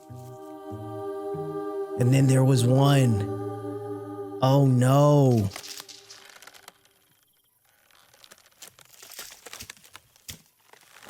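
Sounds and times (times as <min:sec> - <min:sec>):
faint crackling and rustling: 0:05.5 - 0:11.0.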